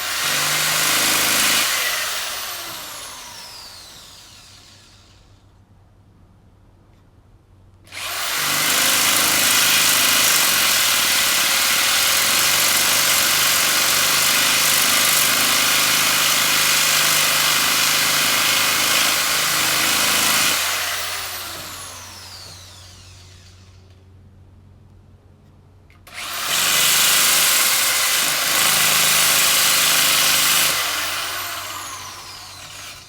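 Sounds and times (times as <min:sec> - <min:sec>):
electric power sander running: 0:00.0 - 0:05.2, 0:14.6 - 0:23.8, 0:26.1 - 0:33.0
sander winding down whine: 0:01.6 - 0:05.3, 0:20.6 - 0:24.0, 0:30.7 - 0:33.0.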